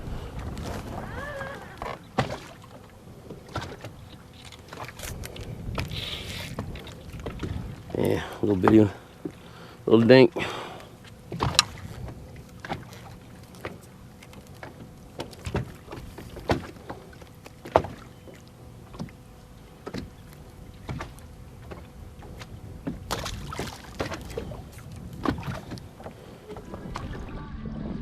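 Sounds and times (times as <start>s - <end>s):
steady low rumble: 0.0s - 1.8s
knocks and clicks on a boat: 1.7s - 9.4s, 10.8s - 27.2s.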